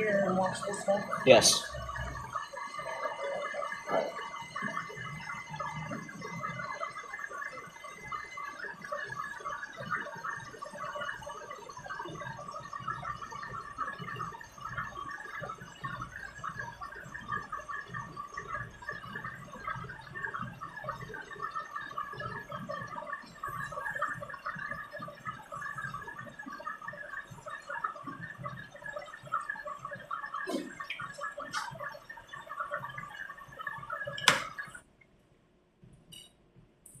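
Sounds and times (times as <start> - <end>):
washing machine water churning: 0.0 - 34.9
washing machine water sloshing: 22.9 - 34.8.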